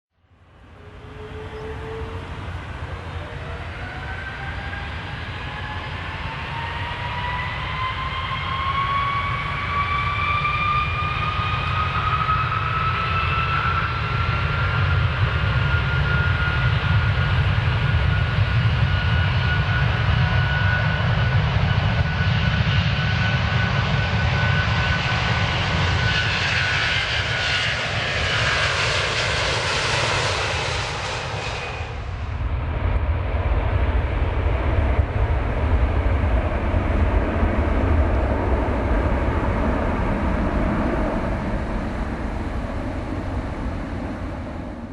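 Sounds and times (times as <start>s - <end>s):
airplane engine whine: 0.2s - 44.9s
heavy low rumble: 30.6s - 44.9s.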